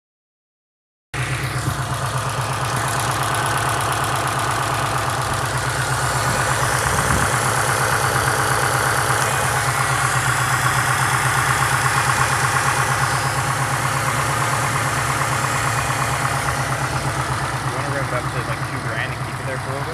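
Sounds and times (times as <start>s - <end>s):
car engine idling with rhythmic knock: 1.2s - 19.9s.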